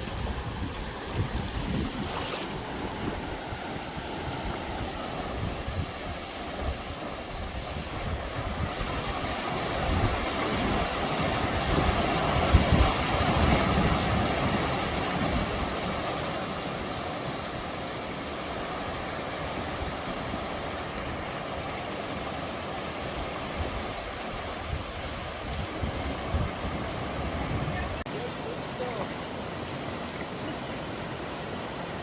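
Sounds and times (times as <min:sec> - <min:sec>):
wind buffeting microphone: 0:00.0 - 0:16.0, 0:23.0 - 0:28.0
stream rushing over rocks: 0:00.0 - 0:32.0.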